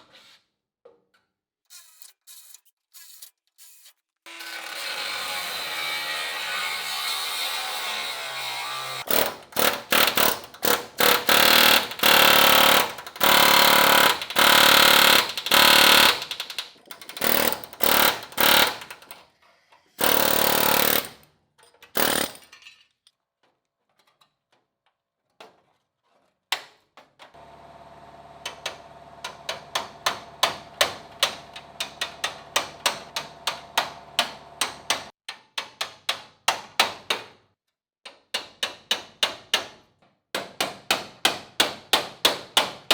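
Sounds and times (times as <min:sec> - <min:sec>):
power tool cutting sheet metal: 0:04.3 - 0:16.5, 0:17.2 - 0:19.2, 0:20.0 - 0:21.2, 0:27.4 - 0:35.1.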